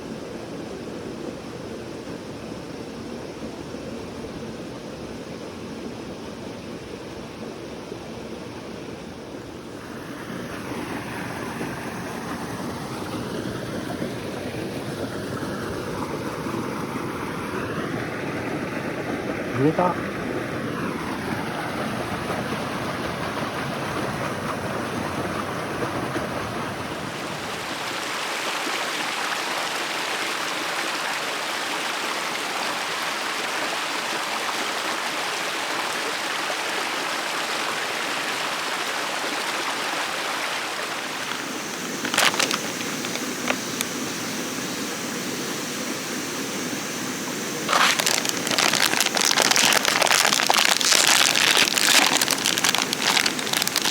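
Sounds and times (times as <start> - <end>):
stream water rushing: 9.7 - 53.9
dense crackling: 41.2 - 43.9, 47.7 - 53.9.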